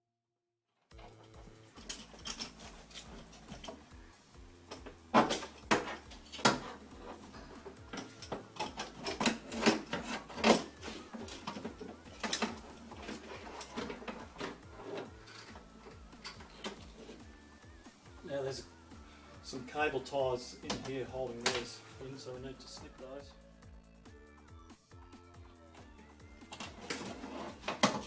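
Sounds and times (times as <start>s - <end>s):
quiet background music: 0.9s - 28.0s
tools and door parts clicking: 1.0s - 20.0s, 20.6s - 22.0s, 26.1s - 28.0s.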